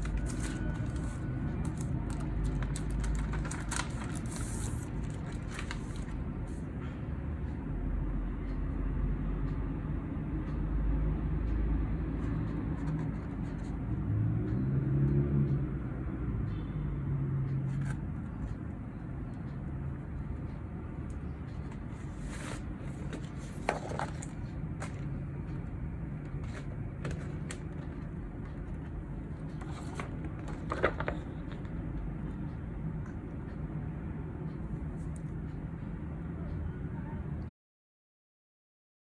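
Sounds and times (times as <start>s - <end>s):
handling clicks and rustles: 0.0s - 6.2s, 21.0s - 32.0s
steady low hum: 17.4s - 37.4s.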